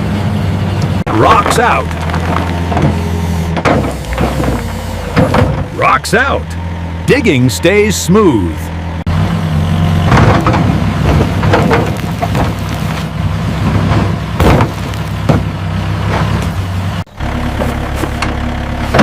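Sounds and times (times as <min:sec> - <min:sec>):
excavator engine running: 0:00.0 - 0:19.0
bucket knocking and scraping rocks: 0:01.1 - 0:05.6, 0:10.1 - 0:16.5, 0:17.5 - 0:18.3.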